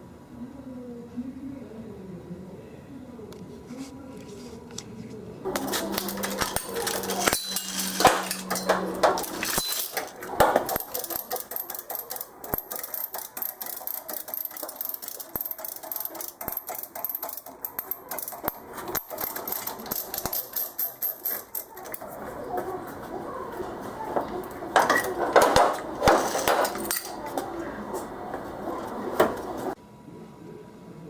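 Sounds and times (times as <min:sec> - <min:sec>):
clinks and knocks: 0:05.5 - 0:29.8.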